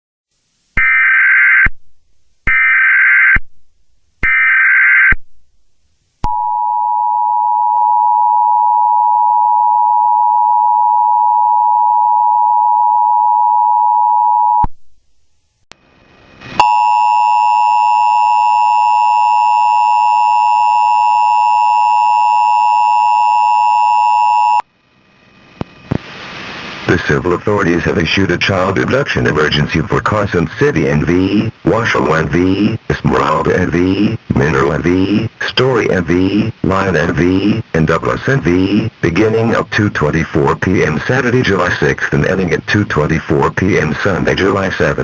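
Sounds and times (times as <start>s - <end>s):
harsh steady tone: 15.7s - 26.0s, 26.9s - 45.0s
two-tone attention signal: 16.6s - 24.6s.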